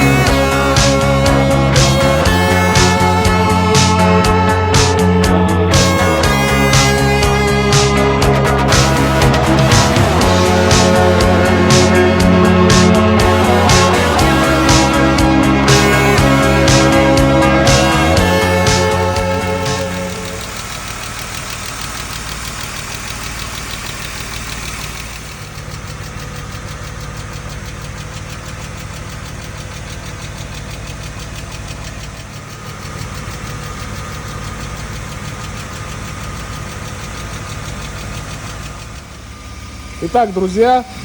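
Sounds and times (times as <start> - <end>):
car engine idling: 0.0 - 41.0
fast engine ticking: 0.0 - 41.0.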